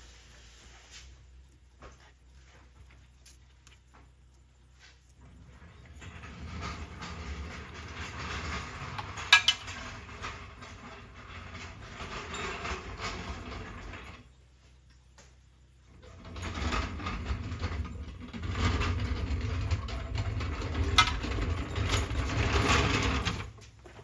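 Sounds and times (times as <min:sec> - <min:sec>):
metal jack rolling and rattling: 0:05.2 - 0:14.3, 0:16.0 - 0:24.0
metal clatter: 0:05.3 - 0:14.3, 0:16.0 - 0:24.0.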